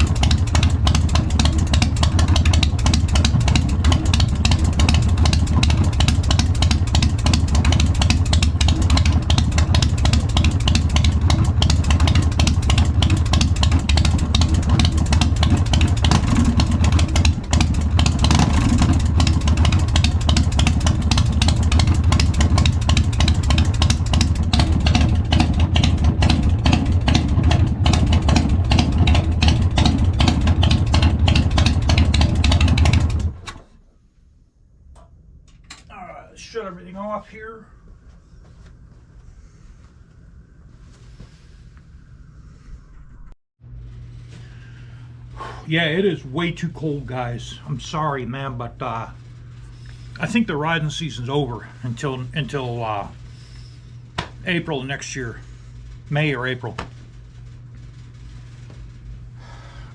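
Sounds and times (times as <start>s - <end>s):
motorcycle engine running: 0.0s - 33.6s, 42.8s - 59.9s.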